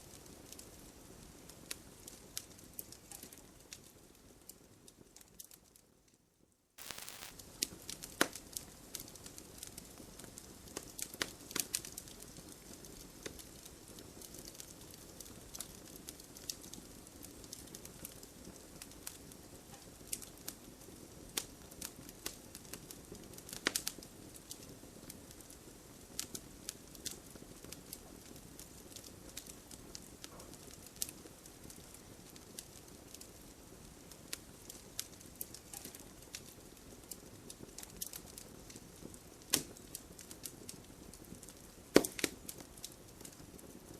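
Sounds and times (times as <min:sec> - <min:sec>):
wood fire crackling and popping: 0:00.2 - 0:05.6, 0:06.8 - 0:43.9
low rush of flame: 0:06.8 - 0:07.3.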